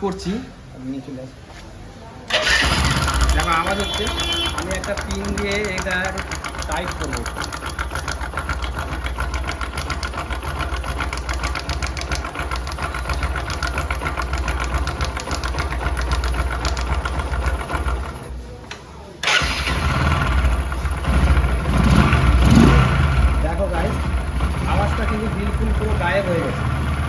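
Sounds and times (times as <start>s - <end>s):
motorcycle engine idling: 2.3s - 18.4s, 19.2s - 27.0s
timing chain rattle: 3.6s - 18.3s.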